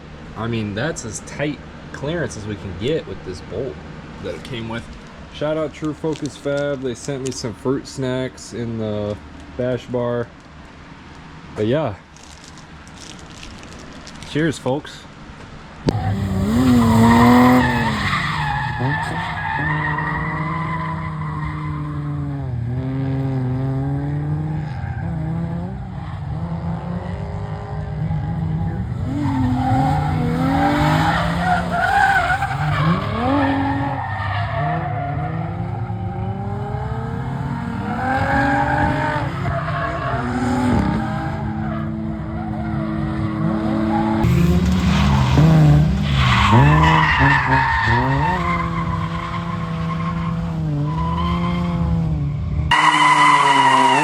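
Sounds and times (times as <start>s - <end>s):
car engine revving hard: 15.9s - 34.0s, 35.1s - 39.5s, 43.4s - 54.0s
tires squealing and skidding: 15.9s - 54.0s.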